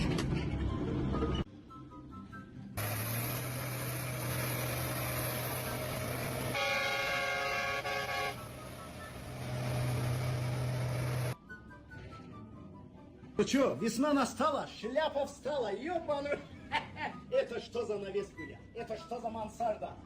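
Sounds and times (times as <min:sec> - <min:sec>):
engine running: 0:02.8 - 0:11.4
vehicle horn blast: 0:06.5 - 0:08.6.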